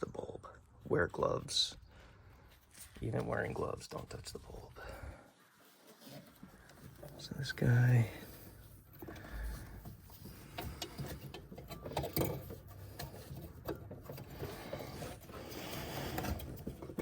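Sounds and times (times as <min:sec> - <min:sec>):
plastic and metal clicks and scrapes: 0:09.0 - 0:17.0.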